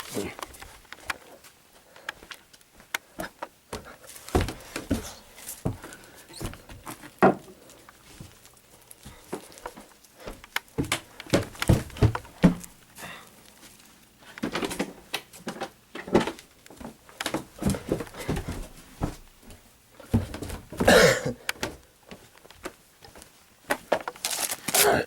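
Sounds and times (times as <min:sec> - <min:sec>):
irregular knocks and taps: 0:10.3 - 0:12.8.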